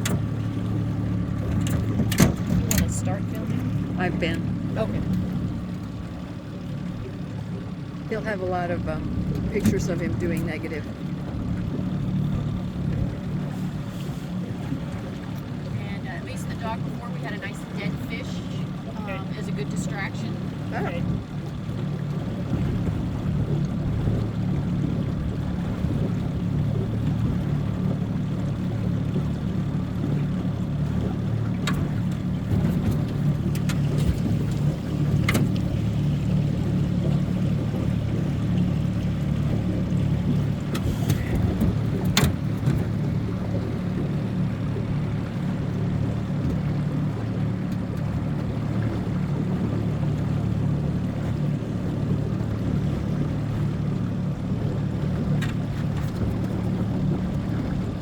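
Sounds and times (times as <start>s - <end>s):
boat motor running: 0.0s - 58.0s.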